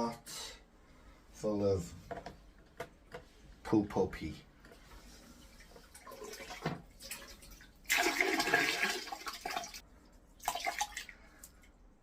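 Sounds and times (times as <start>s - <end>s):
water splashing into toilet bowl: 5.1s - 9.8s, 10.4s - 11.7s.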